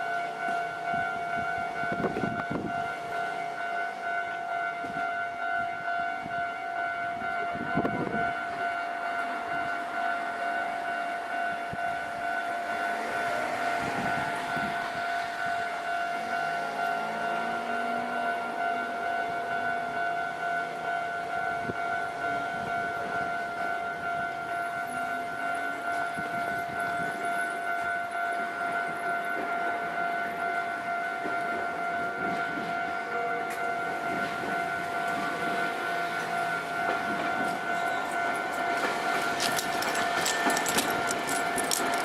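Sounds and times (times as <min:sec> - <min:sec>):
level crossing bell dinging: 0:37.7 - 0:42.0.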